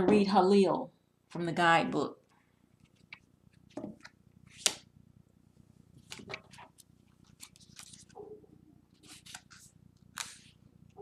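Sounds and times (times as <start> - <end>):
paper pages flipping: 6.0 - 8.2, 8.9 - 10.6.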